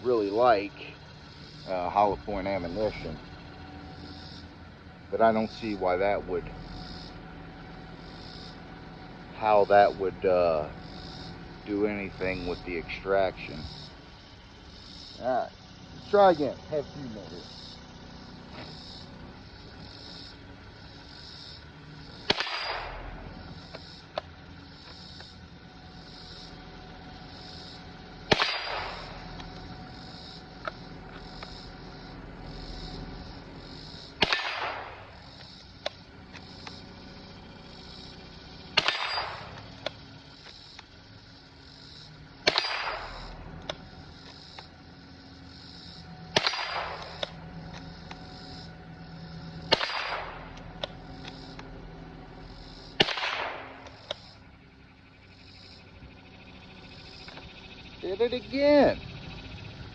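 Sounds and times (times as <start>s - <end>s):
insects chirping: 0.0s - 59.9s
rifle shots: 22.2s - 23.2s, 28.3s - 29.2s, 34.2s - 35.2s, 38.8s - 39.6s, 42.4s - 43.3s, 46.4s - 47.3s, 49.6s - 50.5s, 53.0s - 54.0s.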